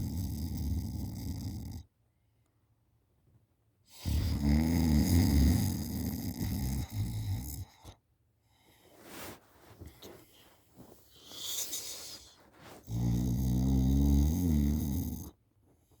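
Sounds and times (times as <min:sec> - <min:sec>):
person snoring heavily: 0:00.0 - 0:01.8, 0:04.0 - 0:07.7, 0:11.2 - 0:15.3
faint breathing: 0:08.4 - 0:13.0.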